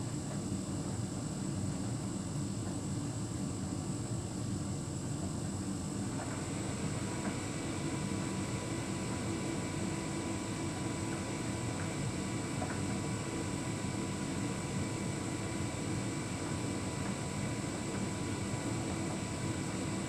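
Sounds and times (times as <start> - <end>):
tumble dryer humming: 6.0 - 20.0.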